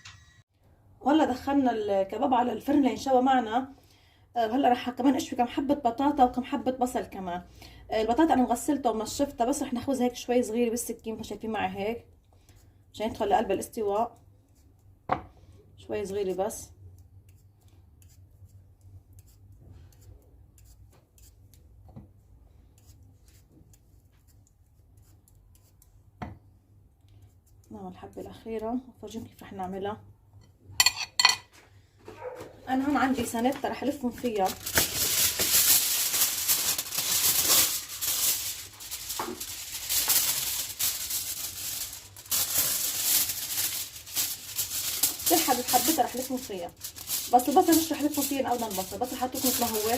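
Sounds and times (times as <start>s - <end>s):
aluminium foil crinkling: 32.8s - 49.9s.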